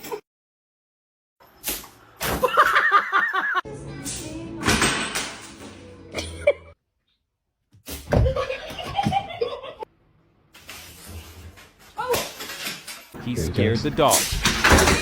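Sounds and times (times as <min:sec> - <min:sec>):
person laughing: 0:02.4 - 0:03.6.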